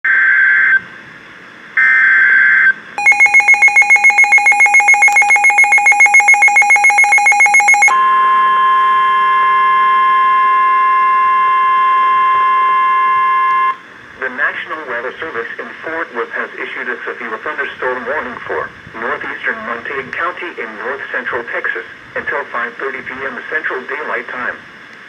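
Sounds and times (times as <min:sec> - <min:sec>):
fast-pulsing two-tone beep: 0:03.0 - 0:07.9
screeching data burst: 0:03.0 - 0:07.9
steady warning alarm tone: 0:03.0 - 0:13.7.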